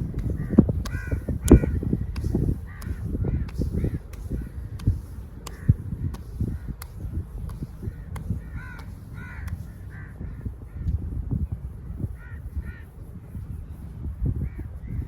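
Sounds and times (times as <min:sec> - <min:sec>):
crows cawing: 0:00.3 - 0:01.8, 0:02.7 - 0:04.5, 0:05.5 - 0:05.8, 0:07.9 - 0:10.8, 0:12.2 - 0:12.9.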